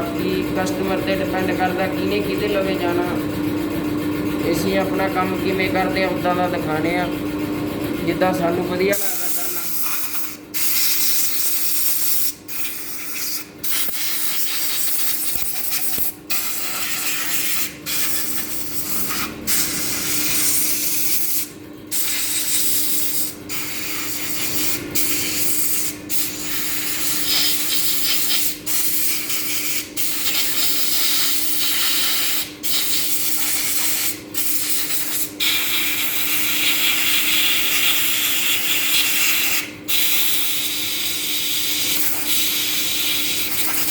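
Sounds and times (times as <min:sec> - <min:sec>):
steady machine hum: 0:00.0 - 0:43.9
high-pressure spray hissing: 0:09.2 - 0:21.4, 0:22.0 - 0:43.9.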